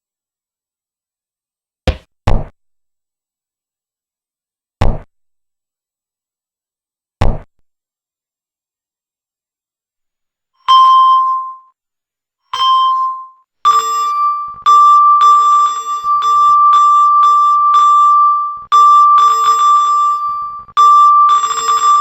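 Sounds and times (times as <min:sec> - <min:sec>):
electronic chime tone: 0:12.6 - 0:22.0.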